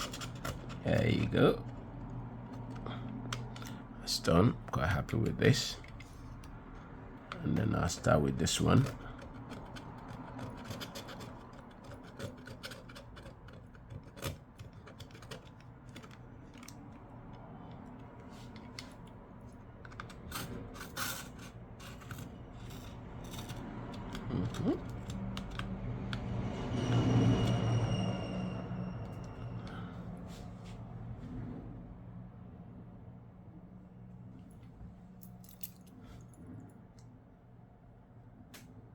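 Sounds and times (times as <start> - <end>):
hand tool scraping adhesive: 0.0 - 1.7, 8.0 - 16.6
low hum: 22.7 - 36.7.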